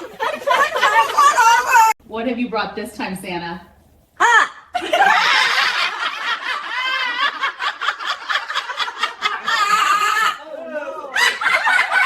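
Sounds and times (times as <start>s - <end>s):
bursts of giggling: 4.2s - 12.0s.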